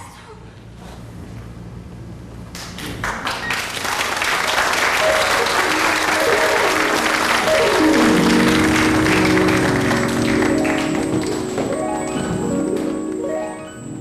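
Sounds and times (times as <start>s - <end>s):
audience applauding: 2.6s - 13.0s
music with cascading note runs: 5.0s - 14.0s.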